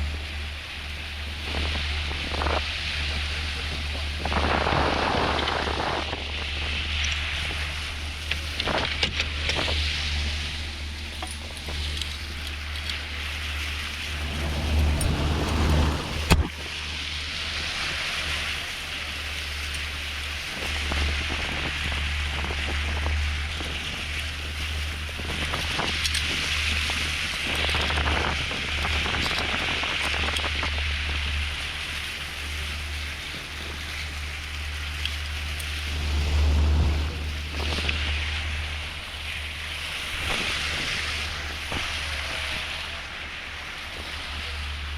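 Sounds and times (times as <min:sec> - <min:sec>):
wind on microphone: 0:00.0 - 0:18.6, 0:20.5 - 0:43.0
boat engine running: 0:00.0 - 0:44.9
water rushing past hull: 0:00.0 - 0:44.9.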